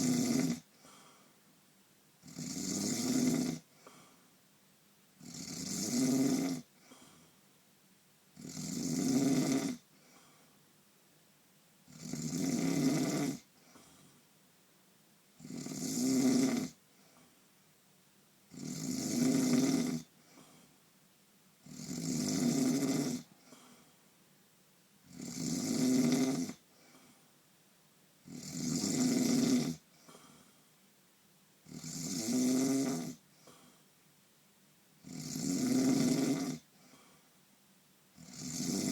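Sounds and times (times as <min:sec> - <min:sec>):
person snoring: 0:00.0 - 0:00.8, 0:02.2 - 0:03.7, 0:05.2 - 0:07.0, 0:08.4 - 0:10.1, 0:11.9 - 0:13.8, 0:15.4 - 0:16.8, 0:18.5 - 0:20.5, 0:21.6 - 0:23.8, 0:25.1 - 0:27.0, 0:28.2 - 0:30.3, 0:31.7 - 0:33.6, 0:35.0 - 0:37.0, 0:38.2 - 0:38.9
quiet breathing: 0:00.0 - 0:02.5, 0:03.5 - 0:04.5, 0:06.6 - 0:07.6, 0:09.7 - 0:10.8, 0:13.4 - 0:14.4, 0:16.7 - 0:17.7, 0:20.0 - 0:21.0, 0:22.9 - 0:24.3, 0:26.5 - 0:27.5, 0:29.7 - 0:31.0, 0:33.0 - 0:34.1, 0:36.5 - 0:37.5.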